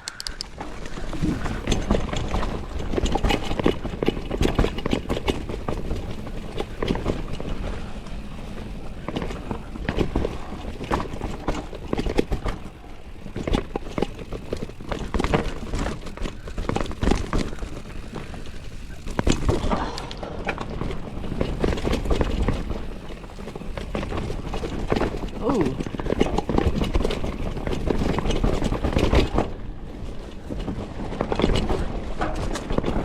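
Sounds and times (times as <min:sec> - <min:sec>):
bike tyre noise on dirt: 0:00.0 - 0:33.0
bike knocks and rattles: 0:00.5 - 0:33.0.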